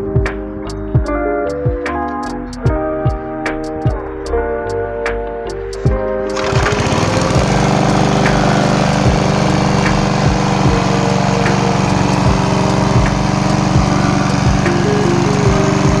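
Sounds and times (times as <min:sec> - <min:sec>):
lawnmower engine running: 0:06.3 - 0:16.0.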